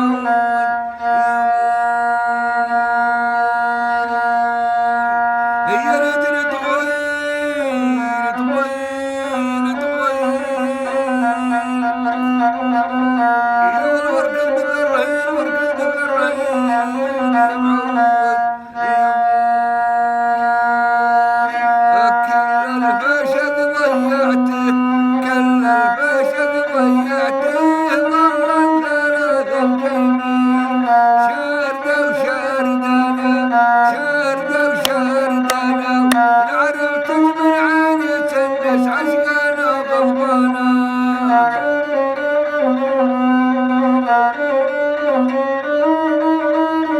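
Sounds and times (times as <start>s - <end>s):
bowed fiddle melody: 0.0s - 20.8s.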